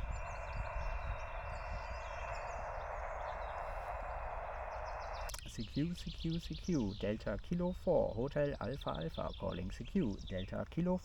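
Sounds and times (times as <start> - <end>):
radio static hiss: 0.8 - 7.0.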